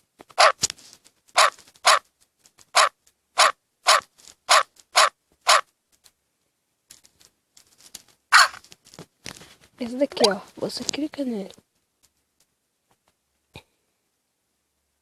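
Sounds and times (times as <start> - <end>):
dog barking: 1.4 - 2.0, 2.8 - 5.6.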